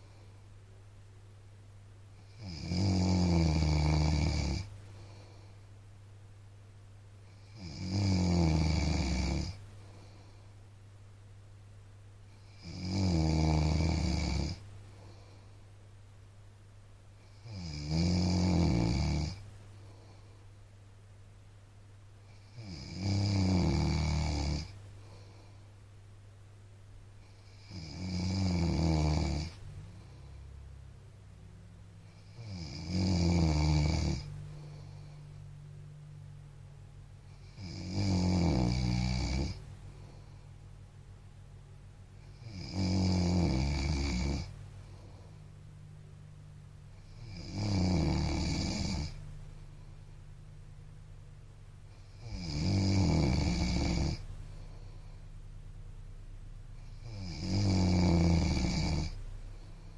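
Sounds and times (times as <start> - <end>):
man snoring: 2.2 - 4.8, 7.3 - 9.6, 12.4 - 14.7, 17.3 - 19.5, 22.3 - 24.8, 27.2 - 30.4, 32.0 - 35.2, 37.3 - 39.7, 42.2 - 45.3, 46.9 - 49.3, 51.9 - 55.2, 56.8 - 59.9.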